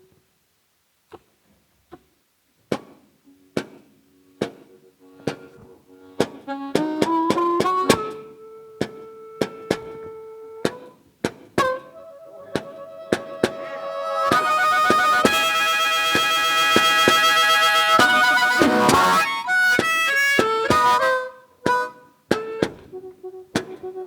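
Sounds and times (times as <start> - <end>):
blues harmonica chords: 3.3 - 24.0
sharp rhythmic taps: 3.6 - 3.8, 4.4 - 4.7, 6.2 - 8.2, 12.6 - 13.6, 14.3 - 22.9.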